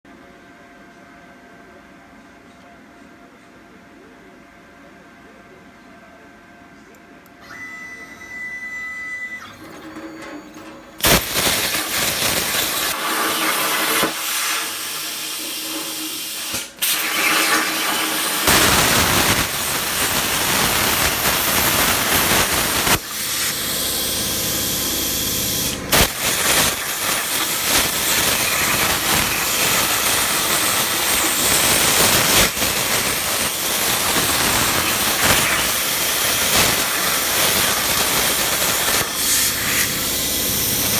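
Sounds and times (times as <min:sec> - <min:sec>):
plasma cutter hissing: 0:11.0 - 0:40.9.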